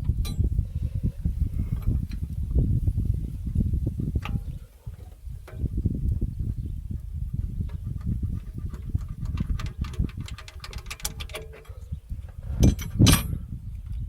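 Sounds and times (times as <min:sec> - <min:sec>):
tools clicking and tapping: 0:08.7 - 0:11.8.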